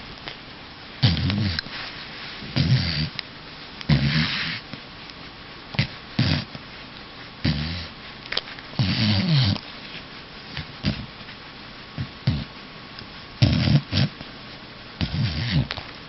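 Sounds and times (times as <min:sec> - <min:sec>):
dog making short vocal noises: 0:13.4 - 0:14.1, 0:15.0 - 0:15.8.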